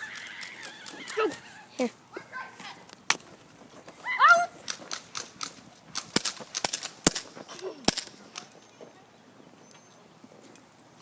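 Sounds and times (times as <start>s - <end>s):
high-pitched cry: 0.0s - 2.5s, 4.0s - 4.6s
airsoft gun shots: 6.0s - 8.2s.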